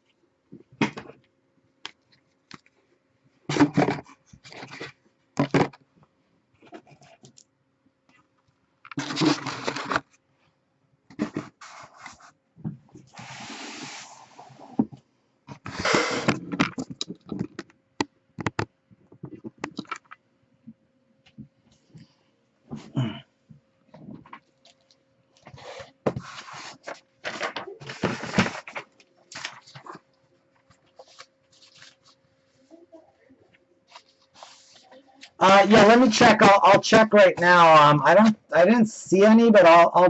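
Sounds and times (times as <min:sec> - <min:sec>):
cards and wrappers rustling: 0:08.9 - 0:10.2, 0:24.4 - 0:32.2.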